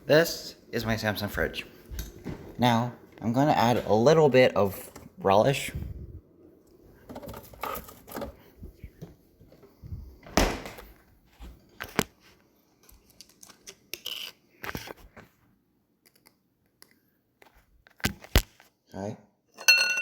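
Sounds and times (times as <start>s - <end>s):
knocks and clicks of kitchen items: 7.0s - 10.9s.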